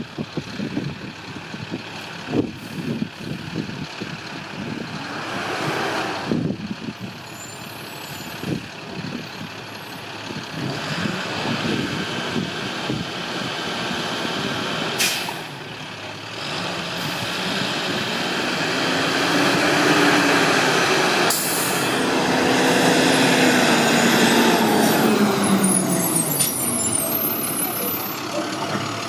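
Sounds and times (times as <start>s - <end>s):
diesel engine working: 0.0s - 29.0s
air brakes hissing: 15.0s - 15.6s, 21.3s - 22.0s.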